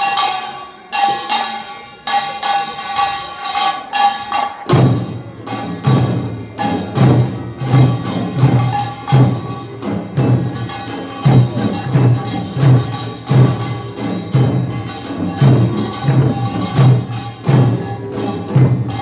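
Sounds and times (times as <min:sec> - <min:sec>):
low drum: 0:04.7 - 0:19.0.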